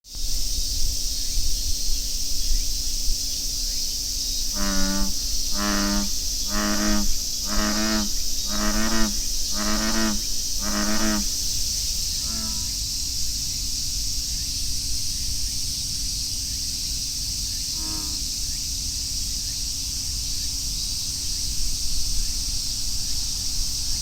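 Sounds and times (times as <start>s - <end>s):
cicadas droning: 0.1s - 24.0s
bullfrog croaking: 4.5s - 11.5s, 12.1s - 12.8s, 17.7s - 18.2s.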